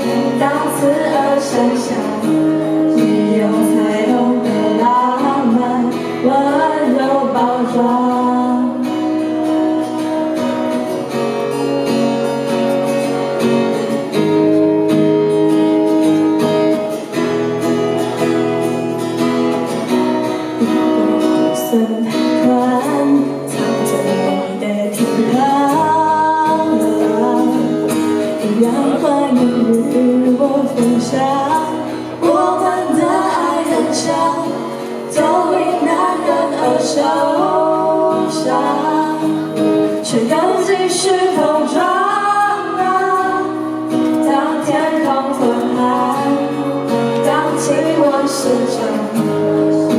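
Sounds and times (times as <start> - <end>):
song with guitar and singing: 0.0 - 49.9.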